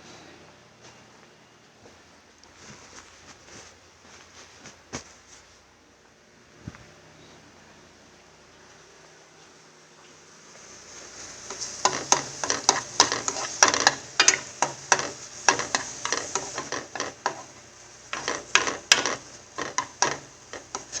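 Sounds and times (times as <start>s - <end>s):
faint sizzle: 0.0s - 21.0s
utensil scraping frying pan: 10.8s - 21.0s.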